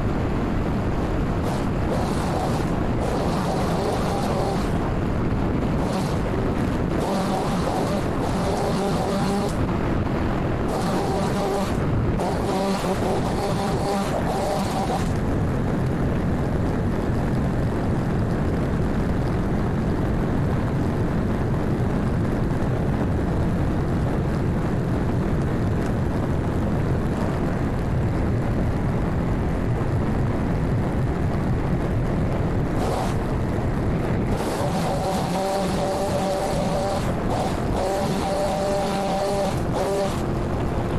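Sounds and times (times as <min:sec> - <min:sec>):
pole saw engine droning: 0:00.9 - 0:15.2, 0:32.8 - 0:33.3, 0:34.2 - 0:40.9.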